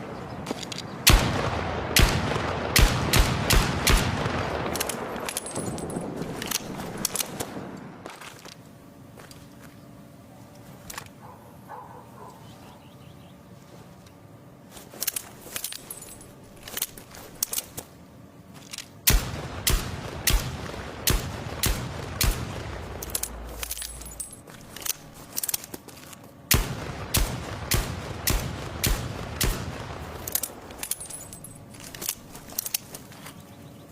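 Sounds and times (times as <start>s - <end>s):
revolver gunshots: 1.1s - 7.7s, 19.1s - 24.2s, 26.5s - 30.8s.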